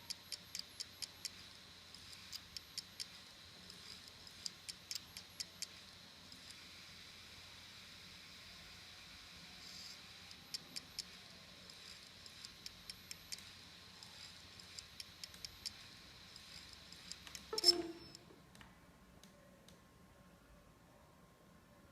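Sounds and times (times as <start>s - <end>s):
hard drive clicking: 0.1s - 5.8s, 10.3s - 18.2s.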